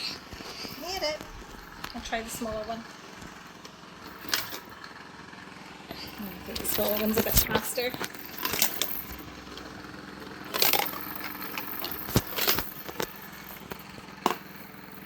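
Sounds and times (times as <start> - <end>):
steady low hum: 0.0 - 15.0
toy clacking down plastic track: 5.9 - 15.0.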